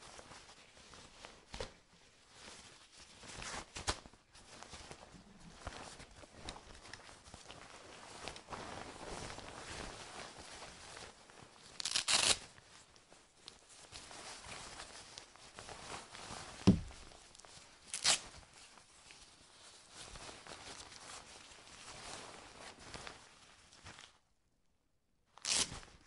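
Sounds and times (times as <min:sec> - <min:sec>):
fabric pants rustling and swishing: 0:00.1 - 0:11.8, 0:12.6 - 0:24.1
short sharp thump: 0:16.7 - 0:17.1.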